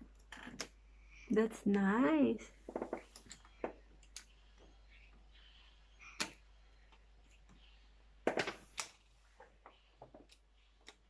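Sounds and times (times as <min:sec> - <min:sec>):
magnetic building blocks clicking: 0:10.0 - 0:11.0.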